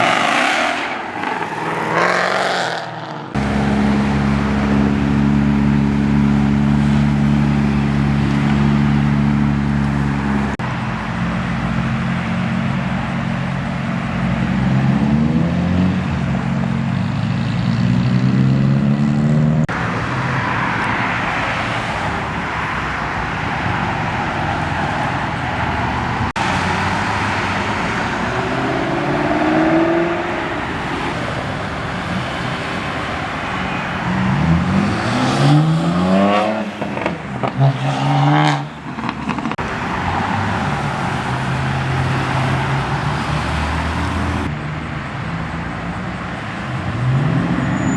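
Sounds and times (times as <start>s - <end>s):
engine revving hard: 0.0s - 10.6s, 26.3s - 38.8s
car engines accelerating past: 0.0s - 12.8s, 14.1s - 44.5s.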